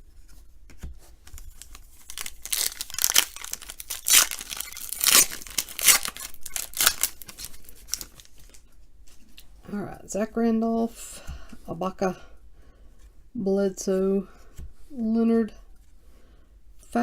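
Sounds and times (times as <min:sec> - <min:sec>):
card pack wrapper tearing: 0:01.3 - 0:08.6.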